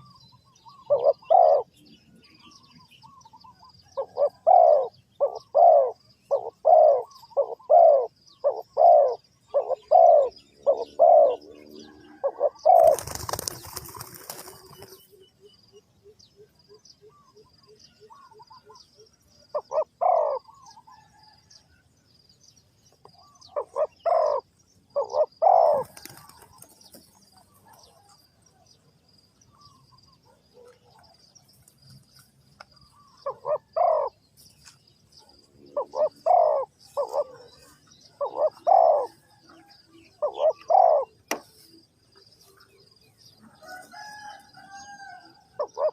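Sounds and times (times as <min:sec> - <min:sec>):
dove cooing: 0:00.0 - 0:01.8, 0:03.0 - 0:15.0, 0:19.5 - 0:21.3, 0:23.2 - 0:28.4, 0:32.9 - 0:34.3, 0:35.2 - 0:41.4, 0:44.2 - 0:45.9
wings flapping: 0:12.8 - 0:15.0, 0:25.8 - 0:27.1.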